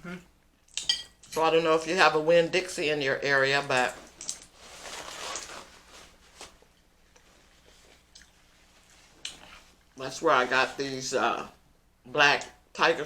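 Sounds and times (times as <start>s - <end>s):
lip smacks and clicks: 9.2s - 9.5s.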